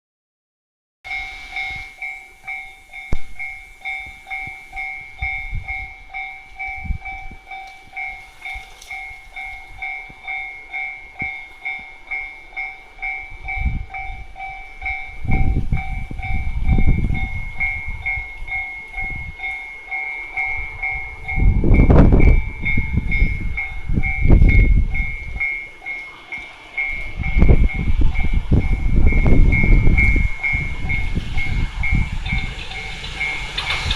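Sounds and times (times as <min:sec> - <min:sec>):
freight train rumbling past: 0:01.1 - 0:33.9
pulsing two-pitch warning tone: 0:01.1 - 0:33.9
wind buffeting microphone: 0:03.1 - 0:11.9, 0:12.9 - 0:33.9.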